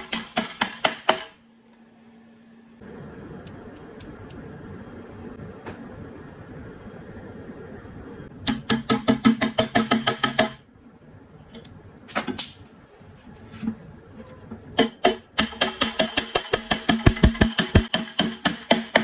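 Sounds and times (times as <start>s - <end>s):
sharp mechanical knocks: 0.0s - 1.4s, 8.4s - 10.6s, 14.8s - 19.0s
low steady hum: 1.4s - 8.8s.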